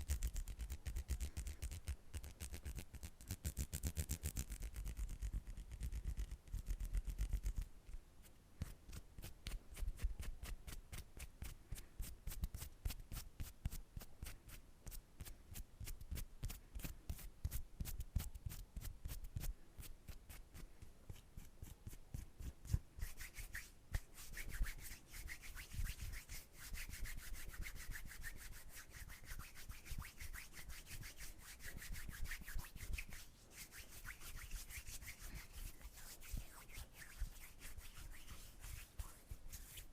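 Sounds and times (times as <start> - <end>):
hands rubbing together: 22.7 - 39.9.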